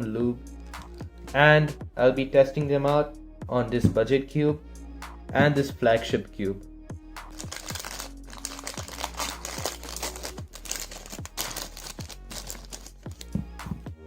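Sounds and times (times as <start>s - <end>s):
electronic music with kick drum: 0.0s - 12.3s, 12.9s - 14.0s
packaging crinkling: 7.3s - 13.4s.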